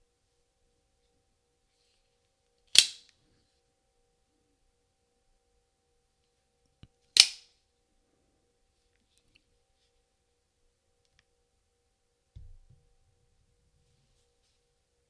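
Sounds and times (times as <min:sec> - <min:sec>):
knife blade snapping out: 0:02.8 - 0:03.0.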